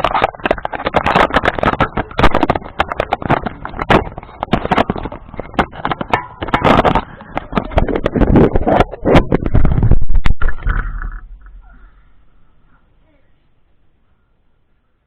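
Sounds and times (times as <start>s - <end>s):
ceiling fan clicking and rattling: 0.0s - 15.0s
low fan rumble: 0.0s - 15.0s.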